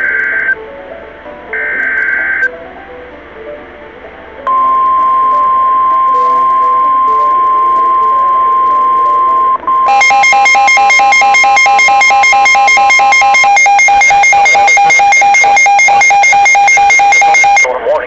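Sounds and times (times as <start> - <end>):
pulsing two-pitch electronic alert: 4.5 - 17.7
steady alert tone: 4.5 - 17.7.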